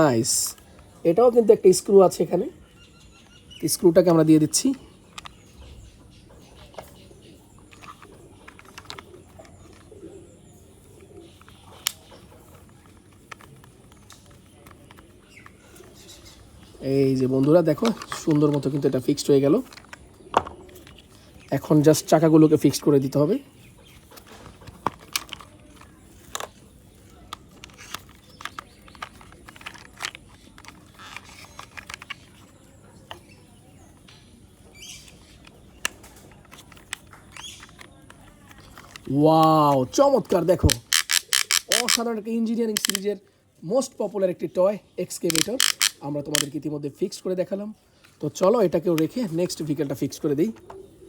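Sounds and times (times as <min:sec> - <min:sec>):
plastic toy parts clicking: 0:02.9 - 0:05.9, 0:07.5 - 0:09.9, 0:11.3 - 0:43.2, 0:45.0 - 0:46.6
pigeon cooing: 0:08.0 - 0:12.5.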